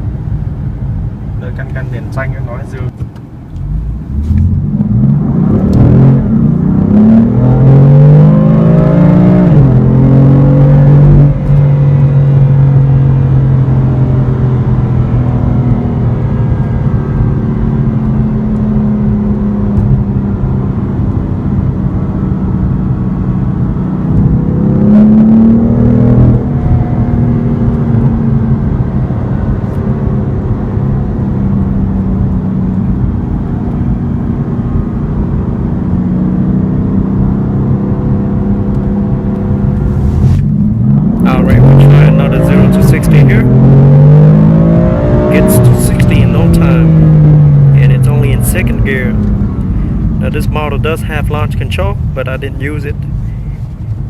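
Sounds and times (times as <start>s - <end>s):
car engine accelerating hard: 3.6s - 54.0s.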